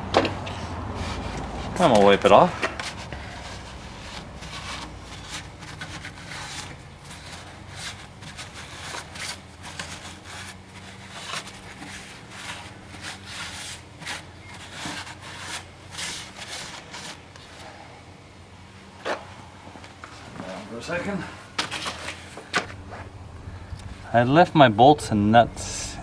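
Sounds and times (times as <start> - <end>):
steady low hum: 0.0 - 26.0
rag rubbing and scrubbing: 0.5 - 17.6.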